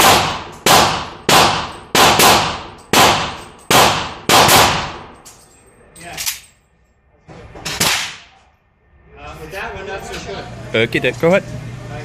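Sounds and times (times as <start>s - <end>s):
rapid gunshots: 0.0s - 5.0s.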